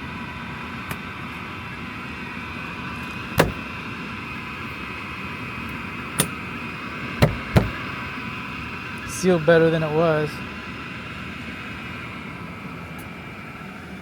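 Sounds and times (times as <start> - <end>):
air handler hum: 0.0 - 14.0
sharp knocks of access cover: 3.0 - 3.8, 6.2 - 6.4, 7.2 - 7.9.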